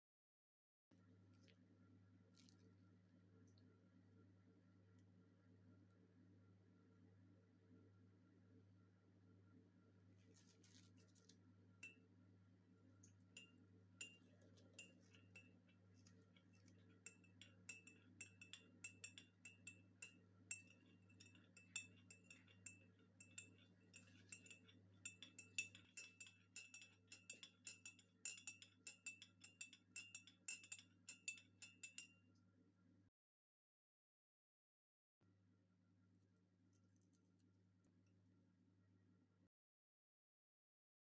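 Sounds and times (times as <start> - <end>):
spoon clinking in a glass: 11.8 - 12.1, 13.4 - 32.2.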